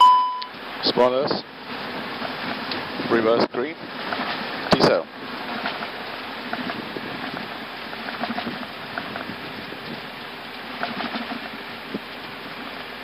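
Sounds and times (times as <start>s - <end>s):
small rattles and clicks: 4.0s - 13.0s.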